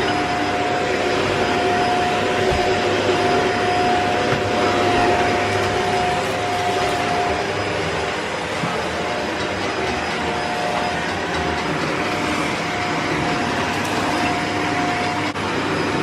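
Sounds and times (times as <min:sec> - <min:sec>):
vacuum cleaner motor whine: 0:00.0 - 0:16.0.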